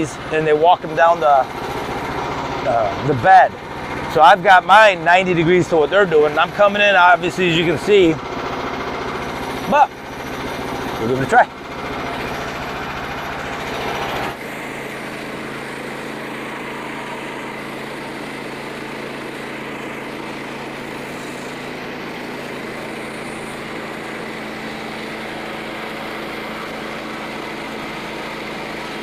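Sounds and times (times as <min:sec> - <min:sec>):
sawmill engine running: 0:00.0 - 0:29.0
band blade whirring: 0:12.2 - 0:29.0.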